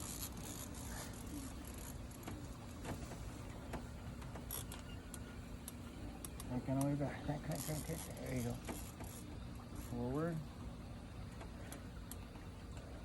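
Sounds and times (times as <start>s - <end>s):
fishing reel clicking and whirring: 0.0s - 2.4s, 4.4s - 10.4s
steady low hum: 0.0s - 13.0s.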